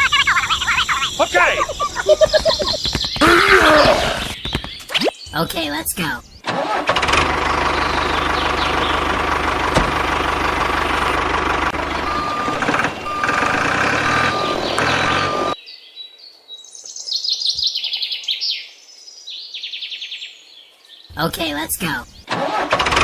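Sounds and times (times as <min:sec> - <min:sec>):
birds chirping in trills: 0:00.0 - 0:22.4
vehicle engine running: 0:06.5 - 0:15.6, 0:22.3 - 0:23.0
beeper sounding: 0:11.7 - 0:15.6.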